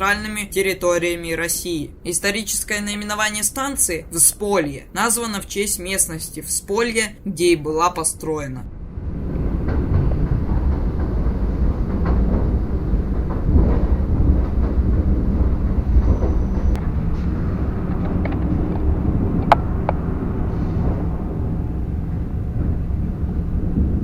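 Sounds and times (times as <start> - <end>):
train carriage rumble: 0.0 - 24.0
train wheel clicks: 9.3 - 16.8.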